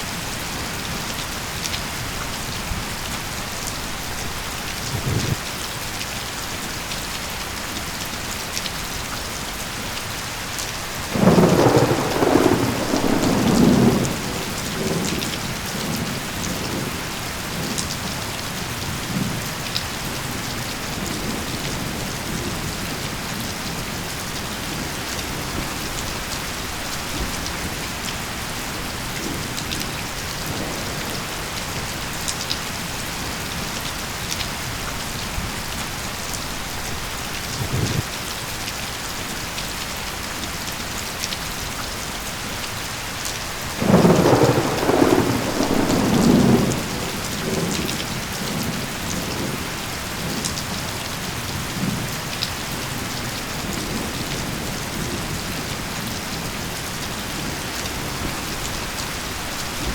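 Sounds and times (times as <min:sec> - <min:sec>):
steady rain falling: 0:00.0 - 0:59.9
thunder rolling: 0:11.1 - 0:17.0, 0:43.8 - 0:49.5.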